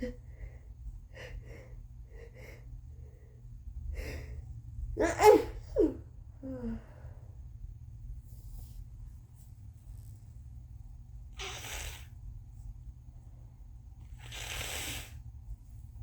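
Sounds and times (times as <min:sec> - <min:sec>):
woman sneezing: 0:05.0 - 0:06.0.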